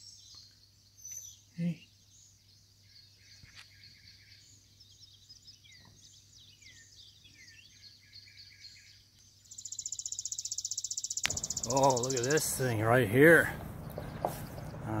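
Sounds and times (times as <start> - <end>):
songbird chirping: 0.0 - 15.0
steady low hum: 11.3 - 15.0.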